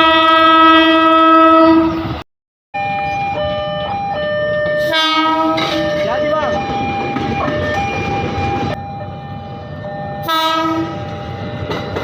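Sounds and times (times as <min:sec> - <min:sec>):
train horn blast: 0:00.0 - 0:02.2, 0:04.8 - 0:06.1, 0:10.2 - 0:11.1
train horn stepping between tones: 0:00.0 - 0:02.2, 0:04.8 - 0:06.3, 0:10.2 - 0:11.1.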